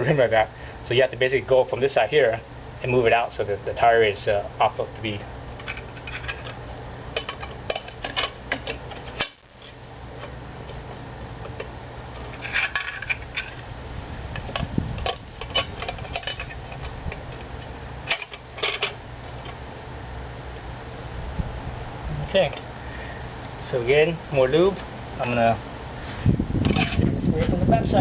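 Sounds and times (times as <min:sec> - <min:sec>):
steady low hum: 0:00.0 - 0:28.0
metal tire spoons clinking on rim: 0:12.2 - 0:13.6, 0:14.3 - 0:19.6.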